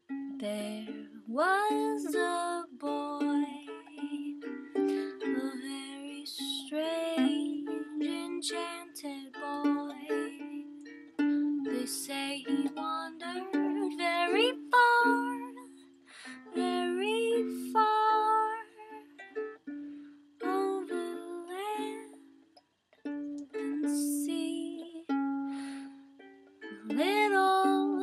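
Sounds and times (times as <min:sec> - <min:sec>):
ukulele playing slow tune: 0:00.0 - 0:28.0
voice singing gliding melody: 0:00.4 - 0:19.3, 0:20.4 - 0:22.2, 0:26.7 - 0:28.0.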